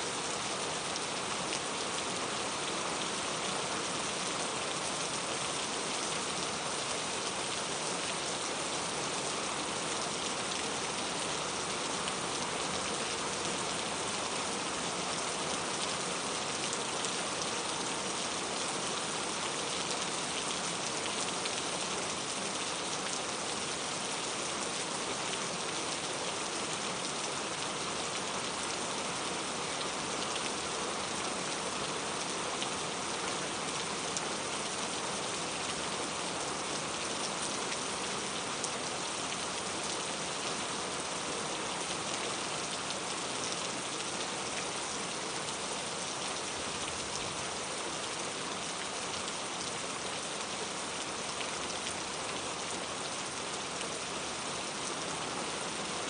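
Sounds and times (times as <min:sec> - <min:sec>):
rain pattering: 0:26.3 - 0:54.0.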